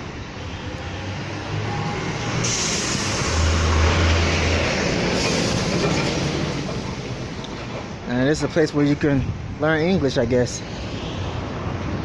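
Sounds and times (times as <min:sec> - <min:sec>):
heavy low engine rumble: 0:00.0 - 0:08.5
vehicles passing: 0:00.0 - 0:12.0.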